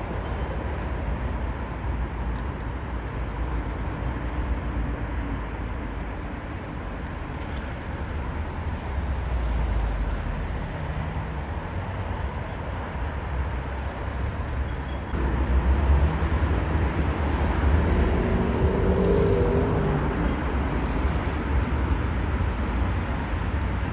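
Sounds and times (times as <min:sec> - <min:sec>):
motor vehicle rumble: 0:13.6 - 0:23.9.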